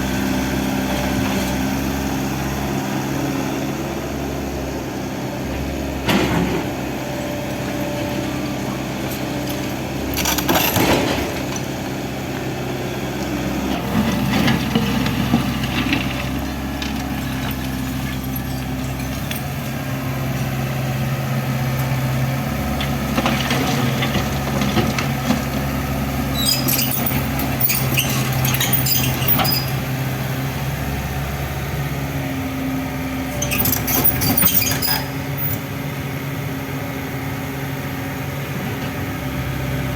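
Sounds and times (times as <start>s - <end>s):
diesel engine running: 0.0s - 39.9s
debris crunching and clattering: 10.1s - 11.8s.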